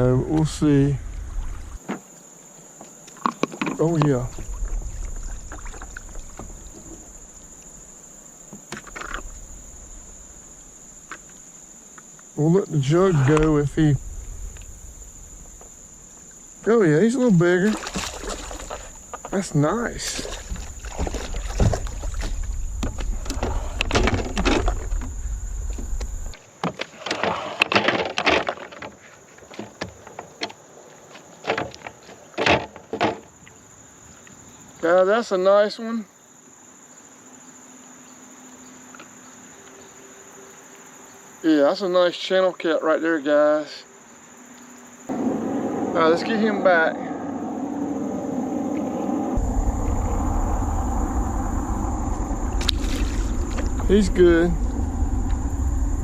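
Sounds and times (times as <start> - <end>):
insects droning: 0.0 - 56.0
low rumble: 12.8 - 16.6, 20.5 - 26.4, 45.1 - 56.0
knocks and splashy handling: 17.6 - 19.4, 20.0 - 25.1
knocks in a canoe: 20.1 - 25.1, 25.7 - 33.4.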